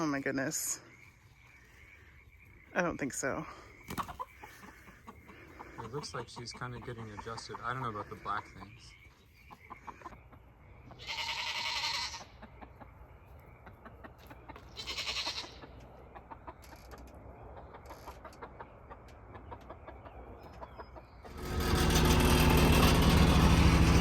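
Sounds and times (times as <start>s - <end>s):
farm animal calls: 0.0s - 21.9s.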